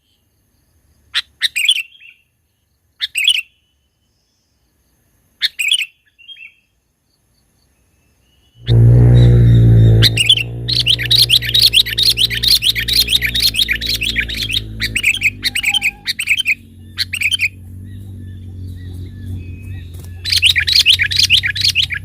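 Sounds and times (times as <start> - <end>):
loud low hum: 8.6 - 22.0
bulbuls chattering calls: 10.9 - 22.0.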